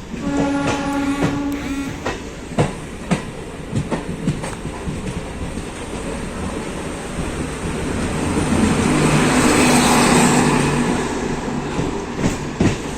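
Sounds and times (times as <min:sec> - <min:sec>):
passing train rushing and humming: 0:00.0 - 0:12.9
train rail-joint clatter: 0:00.0 - 0:12.9.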